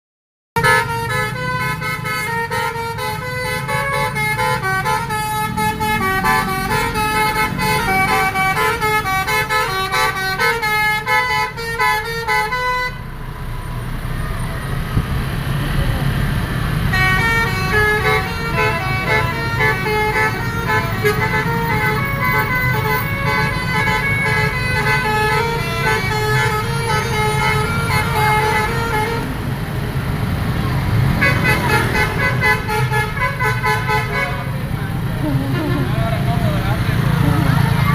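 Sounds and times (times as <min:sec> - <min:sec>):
musical vehicle horn jingle: 0:00.6 - 0:13.2, 0:16.9 - 0:29.4, 0:31.1 - 0:34.7
road noise: 0:00.6 - 0:37.9
vehicle engine rumble: 0:00.6 - 0:37.9.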